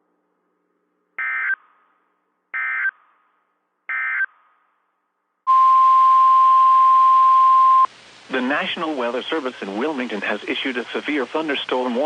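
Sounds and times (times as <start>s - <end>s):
steady warning alarm tone: 5.5s - 7.9s.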